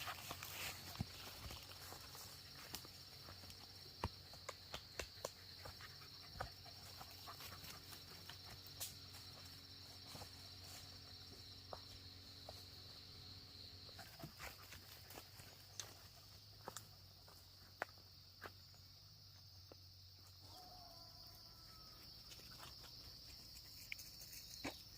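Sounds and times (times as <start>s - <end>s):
insects chirring: 0.0s - 24.9s.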